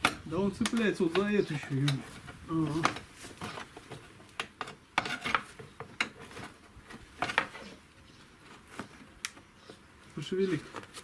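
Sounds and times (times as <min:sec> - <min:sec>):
metal clinking and scraping: 0:01.1 - 0:06.6.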